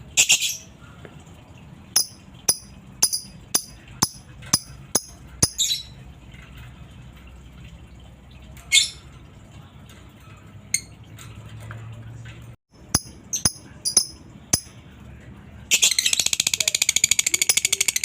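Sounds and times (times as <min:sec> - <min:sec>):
bird chirping high-pitched: 0:00.1 - 0:00.8, 0:02.0 - 0:06.0, 0:12.8 - 0:14.8, 0:15.7 - 0:18.0.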